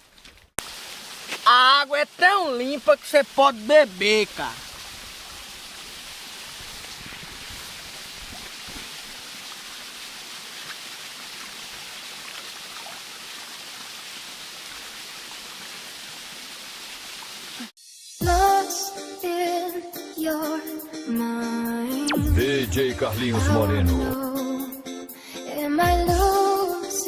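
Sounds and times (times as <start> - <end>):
stream water flowing: 0.6 - 17.7
music: 17.8 - 27.0.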